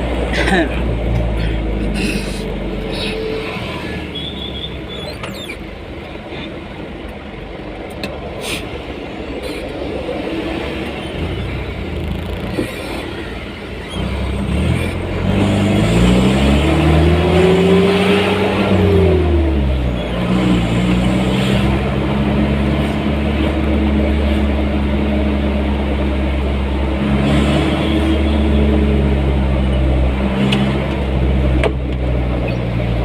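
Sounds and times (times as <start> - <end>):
vehicle engine pulling away: 13.8 - 33.0.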